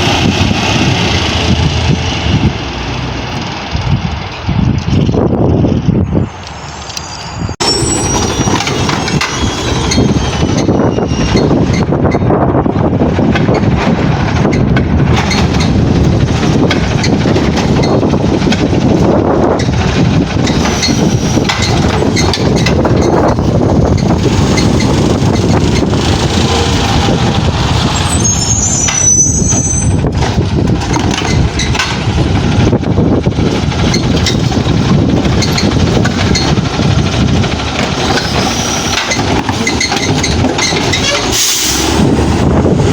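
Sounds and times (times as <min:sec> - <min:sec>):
garbage truck running: 0:00.0 - 0:42.9
wind buffeting microphone: 0:00.0 - 0:42.9
high brake squeal: 0:06.2 - 0:11.8, 0:20.5 - 0:23.2, 0:27.8 - 0:30.1, 0:38.1 - 0:42.0.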